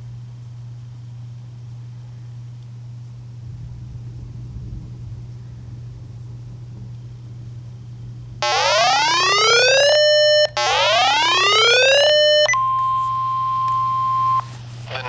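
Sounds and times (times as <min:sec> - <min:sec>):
steady low hum: 0:00.0 - 0:15.0
electronic whoops sweeping upward: 0:08.4 - 0:14.4
steady alarm tone: 0:08.4 - 0:15.0.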